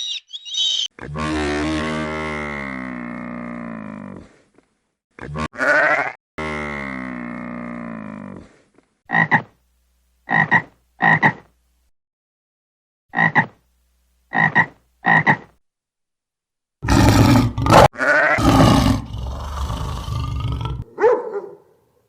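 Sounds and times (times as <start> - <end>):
animal two-part calls: 0.0 - 0.9.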